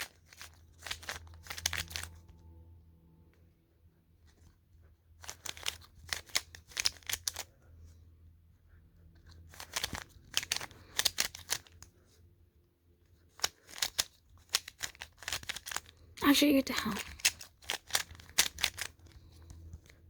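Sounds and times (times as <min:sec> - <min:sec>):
plastic puzzle cube clicking: 0:00.0 - 0:02.3, 0:05.2 - 0:07.5, 0:09.4 - 0:11.9, 0:13.1 - 0:16.2, 0:16.8 - 0:20.0.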